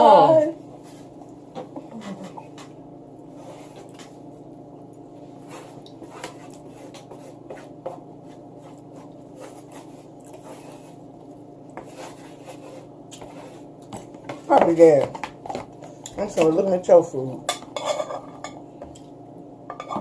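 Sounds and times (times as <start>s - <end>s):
steady low hum: 0.0s - 20.0s
fork scraping on a plate: 17.5s - 18.6s.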